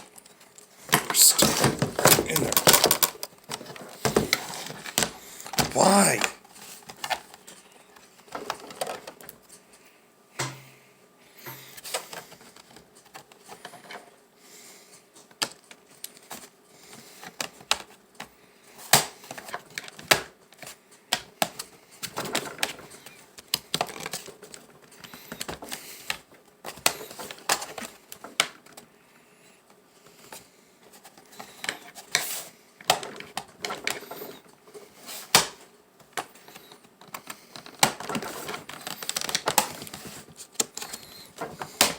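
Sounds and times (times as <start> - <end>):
plastic and metal parts clattering: 0.9 - 5.1, 22.0 - 22.9, 37.0 - 41.9.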